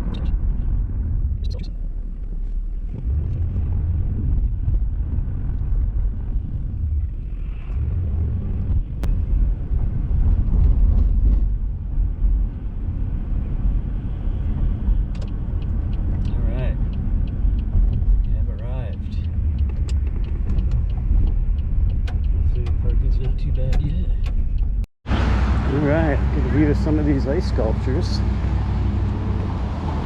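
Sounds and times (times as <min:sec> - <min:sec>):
car interior rumble: 0:00.0 - 0:30.0.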